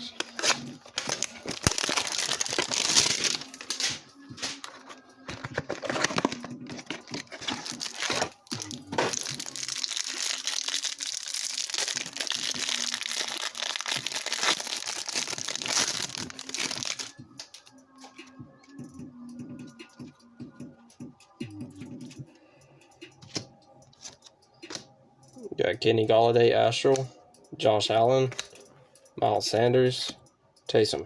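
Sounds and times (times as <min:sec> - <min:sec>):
packaging crinkling and tearing: 0:00.1 - 0:17.6.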